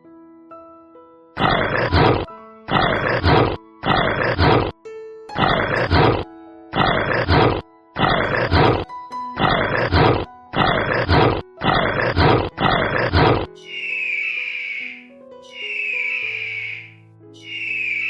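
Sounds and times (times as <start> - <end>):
background music: 0.0 - 18.0
high drawn-out animal call: 1.4 - 4.7, 9.4 - 18.0
animal's loud rough calls: 1.4 - 4.8, 5.4 - 8.8, 9.4 - 18.0.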